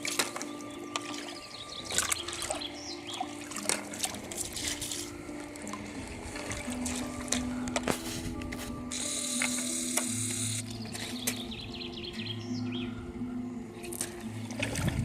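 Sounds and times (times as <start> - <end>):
brook trickling and gurgling: 0.0 - 7.7, 13.7 - 15.0
small splashes: 0.0 - 8.0, 13.9 - 15.0
melody of held notes: 0.0 - 14.5.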